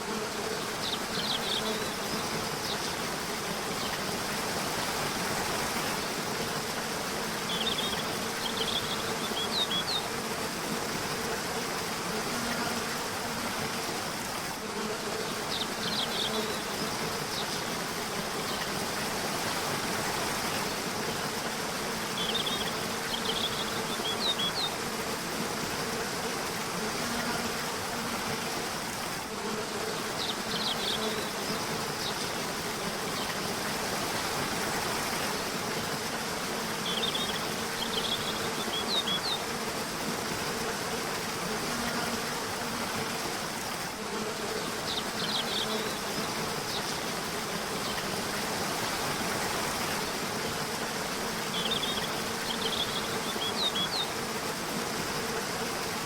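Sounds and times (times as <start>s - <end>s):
small birds chirping: 0.4s - 3.0s, 7.4s - 10.2s, 15.0s - 17.8s, 22.1s - 24.8s, 36.8s - 39.5s, 51.4s - 54.2s.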